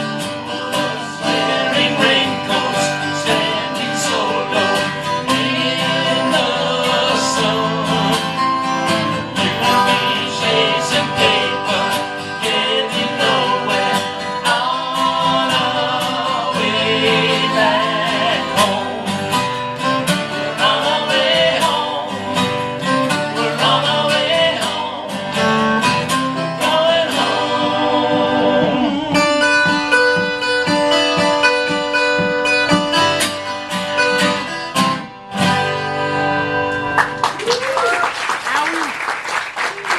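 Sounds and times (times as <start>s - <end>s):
person singing: 0.0s - 19.3s, 20.3s - 22.6s, 23.2s - 25.3s, 26.6s - 29.9s
acoustic guitar strumming: 0.0s - 37.4s.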